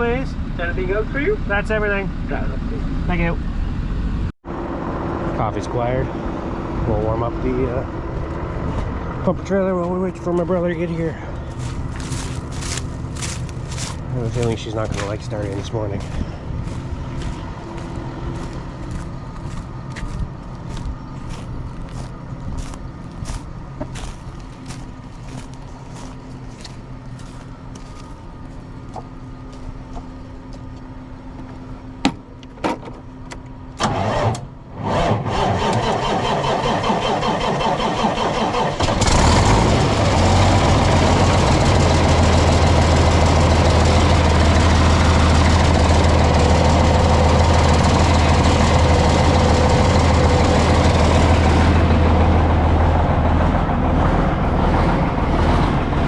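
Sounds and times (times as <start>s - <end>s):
engine cranking and starting: 33.8s - 51.6s.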